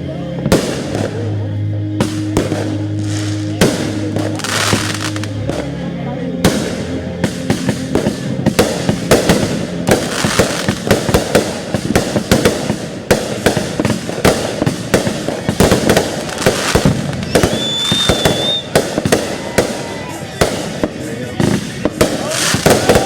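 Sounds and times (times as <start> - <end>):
fireworks bangs and crackling: 0.0 - 23.0
high firework whistle: 16.3 - 20.7.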